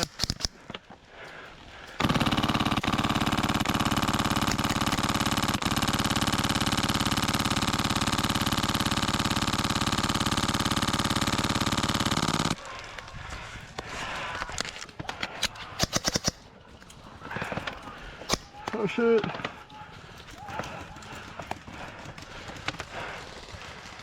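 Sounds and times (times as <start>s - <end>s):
airsoft gun firing full auto: 0.0s - 0.6s, 2.0s - 12.6s, 15.7s - 16.4s.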